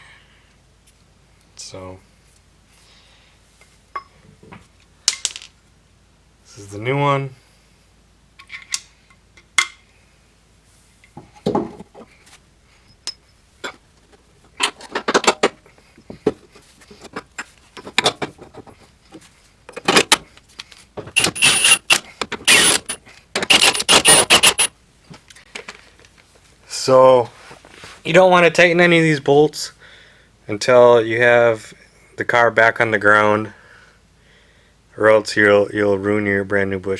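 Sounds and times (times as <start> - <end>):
metal tools clinking and scraping: 12.8 - 20.2, 21.1 - 24.7.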